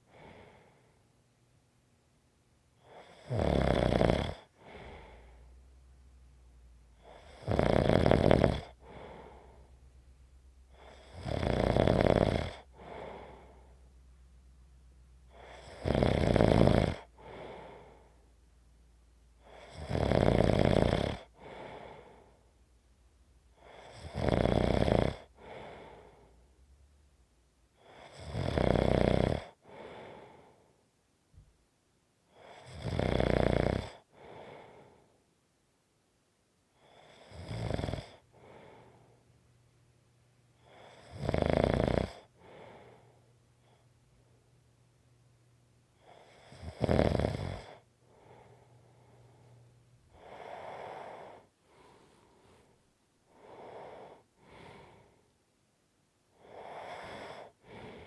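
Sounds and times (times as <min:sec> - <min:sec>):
quiet breath: 0:00.0 - 0:01.7, 0:04.3 - 0:07.5, 0:08.6 - 0:19.9, 0:20.7 - 0:27.0, 0:29.4 - 0:31.5, 0:33.8 - 0:35.4, 0:36.7 - 0:39.8, 0:40.4 - 0:46.8, 0:47.4 - 0:55.6, 0:56.2 - 0:58.0
person snoring: 0:02.9 - 0:05.4, 0:07.0 - 0:09.7, 0:10.8 - 0:13.7, 0:15.3 - 0:18.1, 0:19.4 - 0:22.4, 0:23.6 - 0:26.3, 0:27.8 - 0:30.2, 0:32.4 - 0:34.7, 0:36.8 - 0:39.0, 0:40.6 - 0:43.1, 0:46.0 - 0:49.5, 0:50.1 - 0:52.7, 0:56.4 - 0:58.0.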